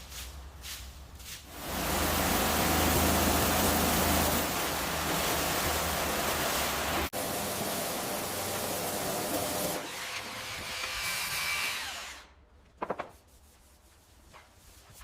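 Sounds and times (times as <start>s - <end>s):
loud steady rushing hiss: 0.0s - 7.1s.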